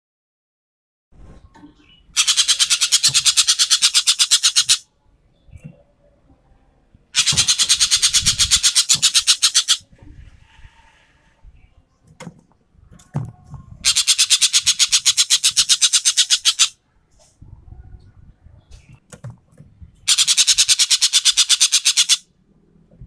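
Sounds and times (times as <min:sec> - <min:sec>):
bird rapid rattling call: 0:02.2 - 0:04.8, 0:07.2 - 0:09.8, 0:13.8 - 0:16.8, 0:20.1 - 0:22.2.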